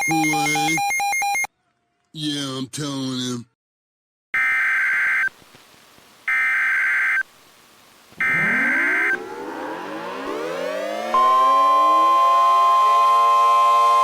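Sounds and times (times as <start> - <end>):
warbling data tone bursts: 8.2 - 14.0
warning siren winding up: 8.2 - 14.0.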